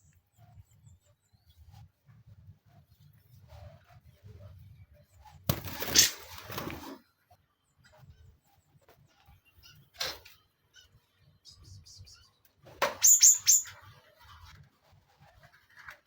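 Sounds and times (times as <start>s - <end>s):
bird harsh call: 13.0s - 13.8s.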